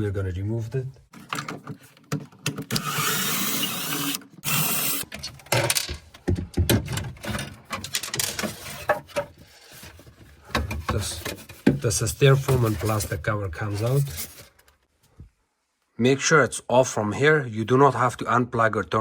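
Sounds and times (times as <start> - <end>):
plastic parts clicking and knocking: 1.1 - 12.8
power screwdriver whirring: 2.7 - 5.1.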